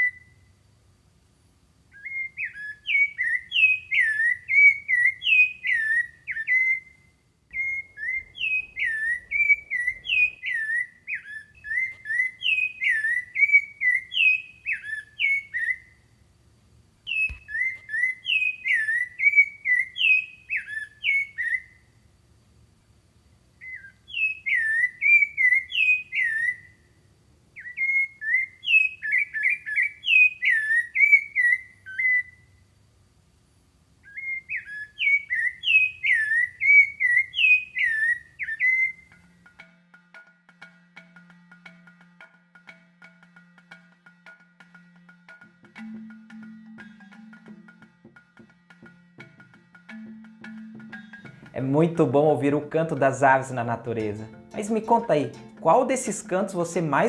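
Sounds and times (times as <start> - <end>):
songbird singing whistled notes: 0.0 - 0.6, 1.9 - 16.1, 17.0 - 22.0, 23.6 - 32.7, 34.0 - 39.4, 50.6 - 57.0.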